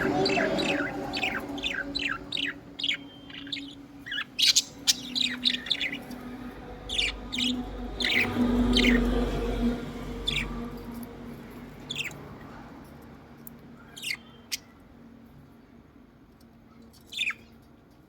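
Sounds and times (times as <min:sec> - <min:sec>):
small bird chirping: 0:00.0 - 0:11.1, 0:11.8 - 0:12.3, 0:13.8 - 0:14.8, 0:16.9 - 0:17.6.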